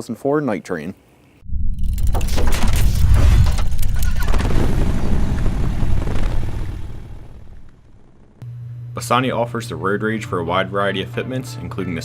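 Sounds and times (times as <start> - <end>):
low steady hum: 7.0 - 10.2.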